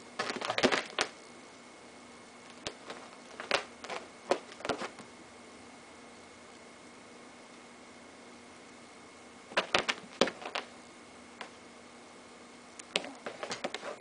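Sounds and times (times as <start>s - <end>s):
sharp popping and crackling: 0.1s - 1.2s, 2.4s - 5.2s, 9.5s - 11.6s.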